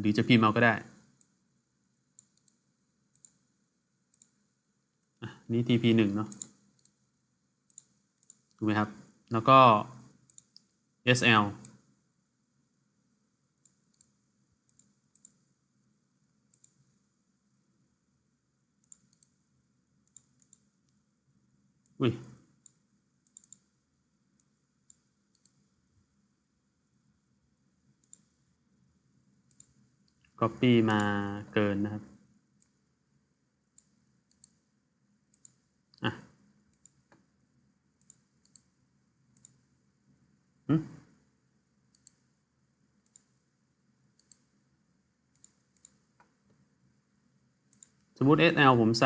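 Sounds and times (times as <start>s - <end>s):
computer mouse clicking: 0.8s - 1.4s, 2.1s - 3.5s, 4.1s - 4.4s, 6.2s - 7.0s, 7.6s - 9.2s, 9.9s - 10.8s, 11.6s - 11.9s, 13.6s - 15.5s, 16.5s - 17.0s, 18.8s - 19.4s, 20.0s - 21.0s, 21.8s - 25.7s, 28.0s - 28.4s, 29.4s - 30.4s, 32.0s - 32.9s, 33.7s - 34.7s, 35.3s - 37.3s, 38.0s - 39.7s, 41.9s - 42.3s, 43.0s - 43.4s, 44.1s - 44.6s, 45.3s - 46.6s, 47.6s - 48.2s.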